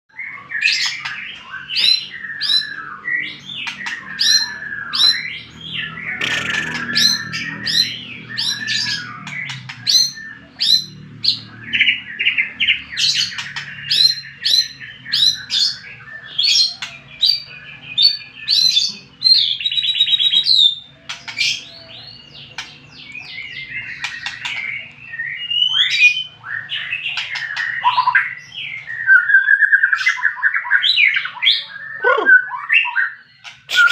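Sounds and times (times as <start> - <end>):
songbird whistles and chirps: 13.1 - 33.9.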